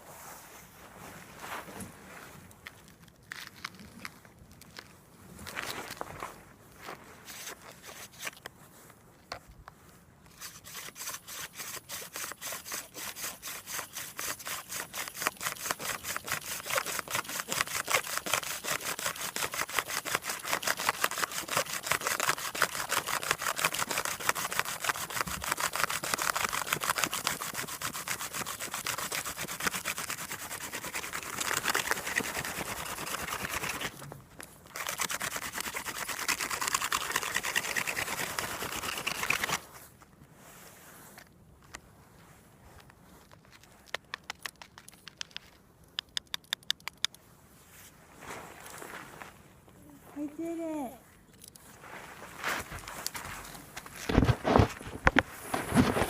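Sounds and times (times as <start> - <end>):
wooden spindle grinding on board: 10.4 - 34.0, 34.8 - 39.6.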